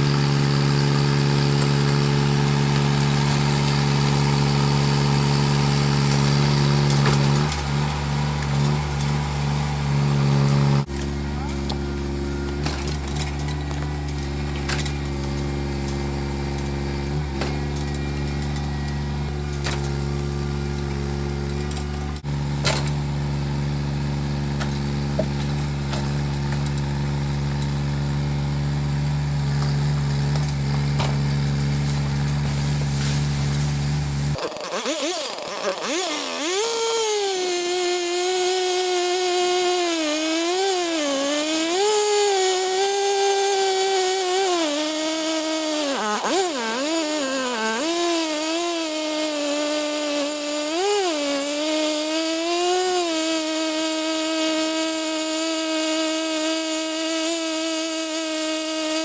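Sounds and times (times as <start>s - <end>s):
heavy engine running: 0.0s - 34.4s
chainsaw running at high speed: 0.0s - 59.0s.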